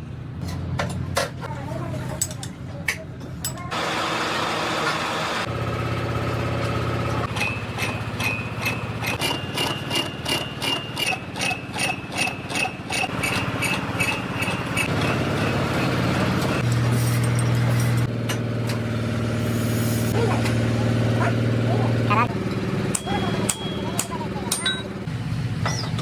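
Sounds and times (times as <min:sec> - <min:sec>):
high ringing tone: 0:23.0 - 0:25.0.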